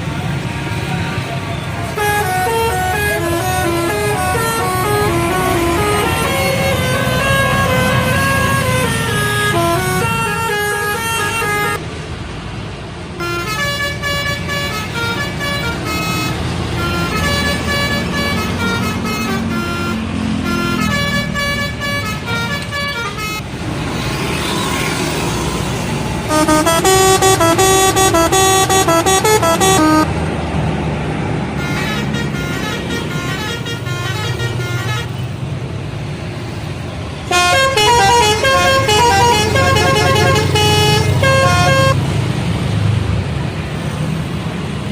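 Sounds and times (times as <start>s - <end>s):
bus engines running: 0.0s - 44.9s
bus horns playing tune-like notes: 0.1s - 11.8s, 13.2s - 23.5s, 26.2s - 30.2s, 31.5s - 35.5s, 37.2s - 42.1s.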